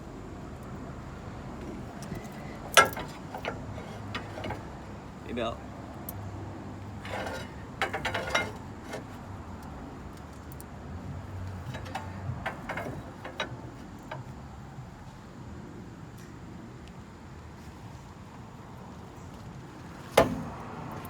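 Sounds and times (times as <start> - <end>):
pry bar knocking on metal: 2.7 - 4.8, 7.0 - 9.2, 11.7 - 14.2.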